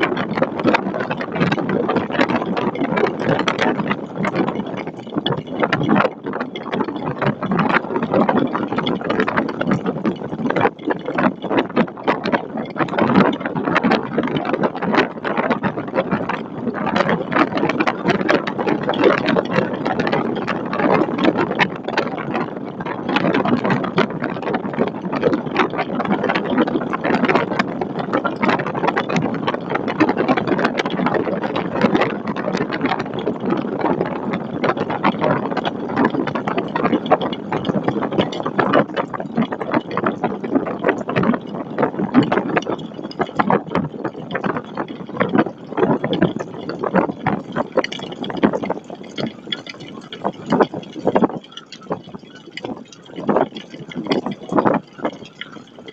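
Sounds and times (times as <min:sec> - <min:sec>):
wind buffeting microphone: 0:00.0 - 0:55.9.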